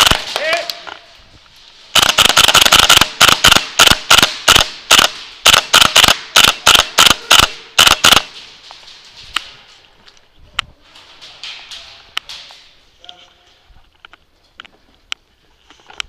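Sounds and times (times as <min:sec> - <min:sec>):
airsoft gun shots: 0:00.0 - 0:00.6, 0:02.0 - 0:08.3.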